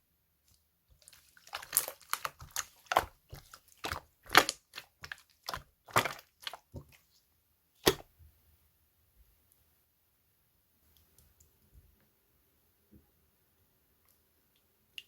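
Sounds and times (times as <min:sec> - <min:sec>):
slime squeezed by hand crackling: 0:01.0 - 0:06.9.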